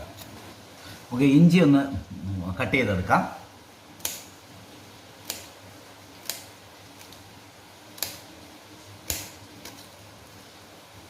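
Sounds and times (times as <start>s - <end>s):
knife cutting ginger root: 5.2s - 5.6s, 6.2s - 7.2s, 7.9s - 8.3s, 9.0s - 9.8s.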